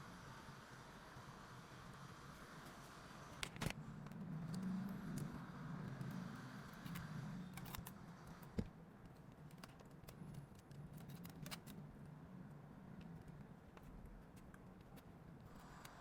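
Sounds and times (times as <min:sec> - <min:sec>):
small tools clicking and tapping: 0:03.4 - 0:11.8.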